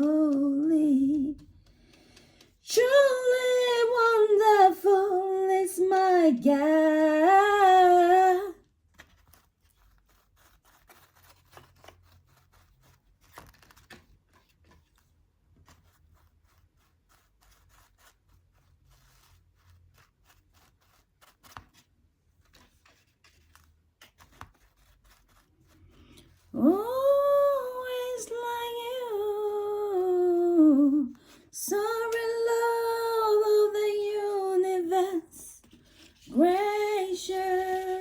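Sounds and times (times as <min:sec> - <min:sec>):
paper and cardboard rustling: 0:07.6 - 0:26.6.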